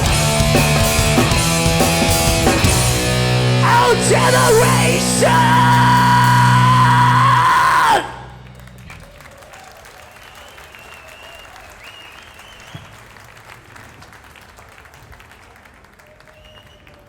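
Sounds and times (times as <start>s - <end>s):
punk band with distorted guitars: 0.0s - 9.0s.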